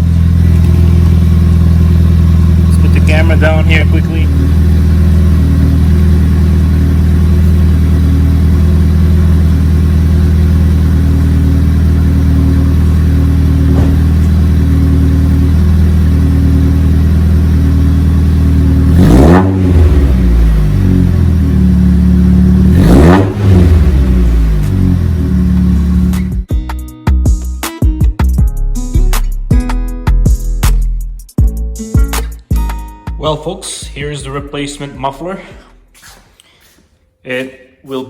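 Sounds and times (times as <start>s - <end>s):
loud car engine idling and revving: 0.0s - 26.5s.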